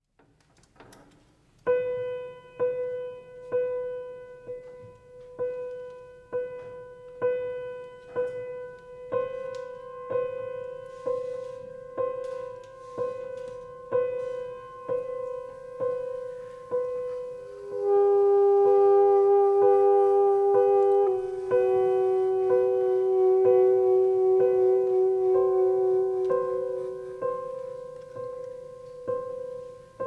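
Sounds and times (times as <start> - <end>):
higher piano note: 6.3 - 30.0
piano low note ringing: 11.9 - 30.0.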